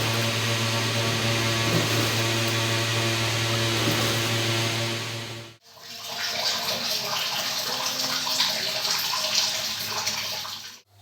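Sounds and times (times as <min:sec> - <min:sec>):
machine hum: 0:00.0 - 0:05.6
water running and splashing: 0:05.6 - 0:10.8.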